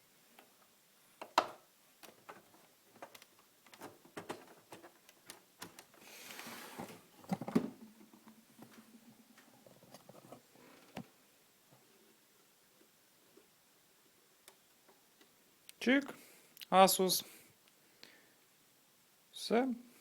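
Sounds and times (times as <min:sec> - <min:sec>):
faint steady hum: 0:00.0 - 0:20.0
hands handling monitor cables: 0:00.4 - 0:11.1.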